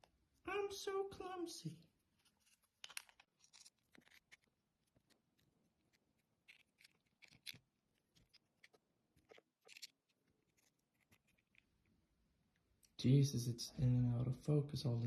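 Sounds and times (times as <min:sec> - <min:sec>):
small clicks and scrapes of parts: 0:02.2 - 0:11.9.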